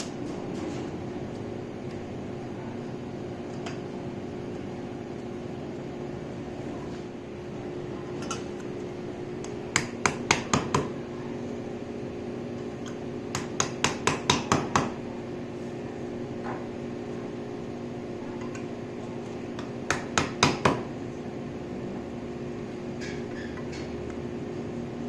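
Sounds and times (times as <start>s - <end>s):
steady low hum: 0.0s - 23.2s
mallet tapping on frame tubes: 13.3s - 15.0s.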